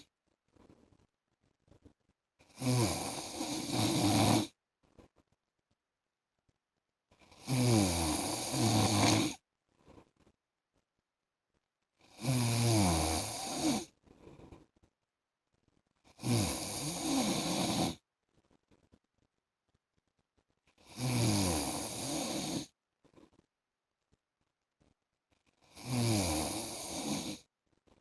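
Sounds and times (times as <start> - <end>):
quiet breaths: 0.0 - 28.0
man snoring: 2.5 - 4.6, 7.3 - 9.4, 12.1 - 13.9, 16.2 - 18.0, 20.8 - 22.7, 25.7 - 27.4.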